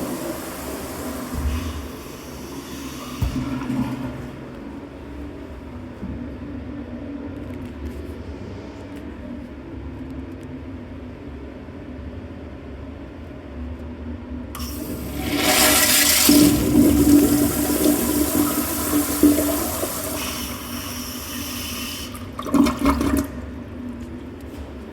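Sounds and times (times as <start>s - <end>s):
toilet cistern refilling: 0.0s - 5.2s, 14.6s - 23.9s
toilet flushing: 0.0s - 5.4s, 14.6s - 24.1s.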